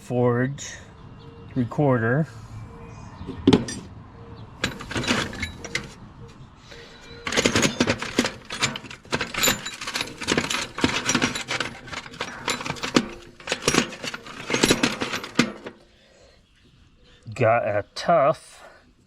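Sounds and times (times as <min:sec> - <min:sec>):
metal wrenches clinking: 0:03.5 - 0:03.9, 0:04.6 - 0:15.9.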